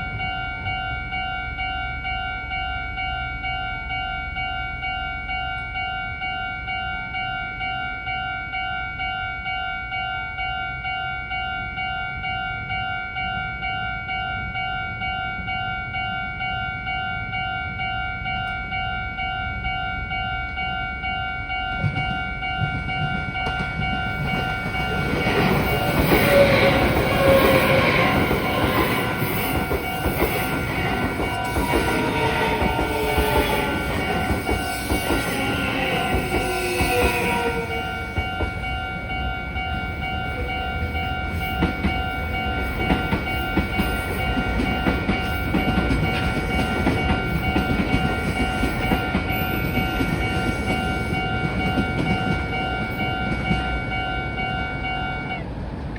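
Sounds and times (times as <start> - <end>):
level crossing bell ringing: 0.0 - 55.4
electric train passing: 0.0 - 55.9
train wheels clattering: 21.6 - 39.8, 40.8 - 54.2.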